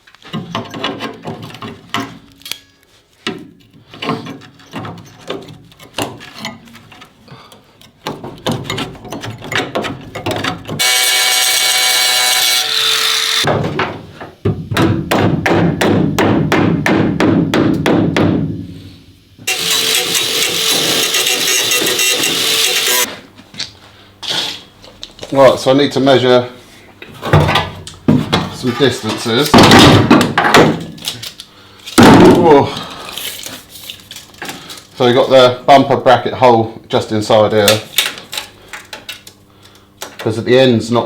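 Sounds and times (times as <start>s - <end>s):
power tool running: 10.8s - 13.5s, 19.5s - 23.1s.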